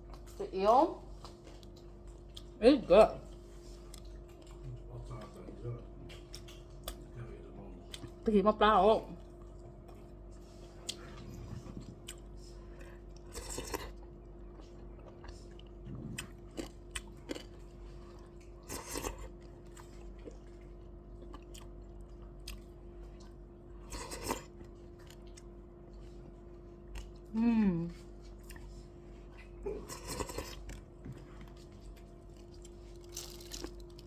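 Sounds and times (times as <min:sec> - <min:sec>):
chewing and crunching food: 0:00.0 - 0:34.0
low hum: 0:07.1 - 0:16.6.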